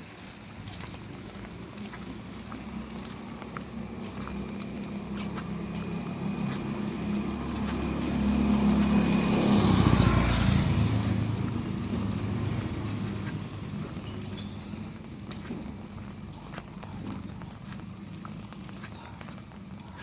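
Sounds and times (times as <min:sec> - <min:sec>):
rain pattering: 0:00.0 - 0:20.0
vehicle driving past on wet road: 0:00.1 - 0:15.7.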